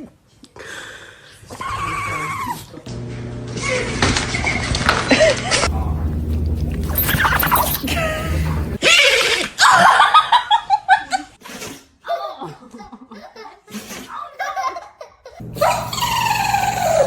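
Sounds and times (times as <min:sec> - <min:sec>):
hearty laughter: 0:04.9 - 0:05.7, 0:07.0 - 0:11.4, 0:12.4 - 0:17.0.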